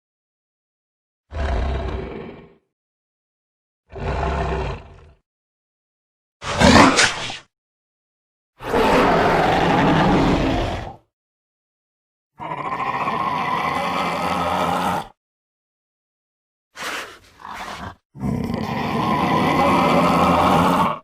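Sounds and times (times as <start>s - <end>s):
dinosaur roaring: 1.3s - 2.6s, 3.9s - 5.2s, 6.4s - 7.0s, 8.6s - 11.0s, 12.4s - 15.2s, 16.8s - 21.0s.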